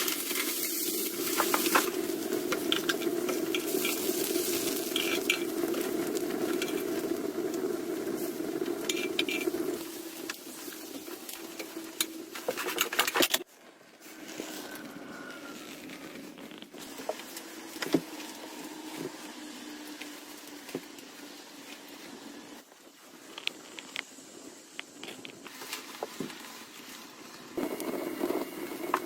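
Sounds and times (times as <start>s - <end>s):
food sizzling: 0.0s - 13.2s.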